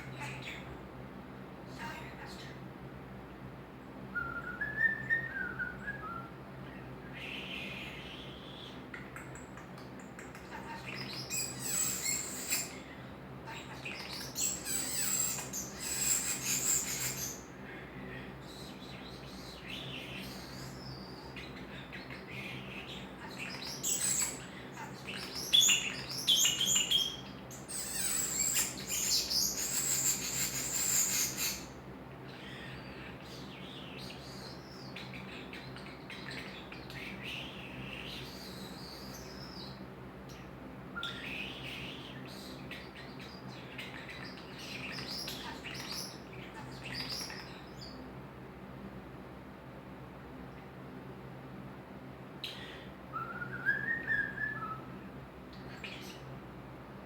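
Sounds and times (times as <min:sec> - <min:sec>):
starling warbling and whistling: 0:11.0 - 0:12.9, 0:14.0 - 0:17.5, 0:22.4 - 0:31.8, 0:52.5 - 0:54.9.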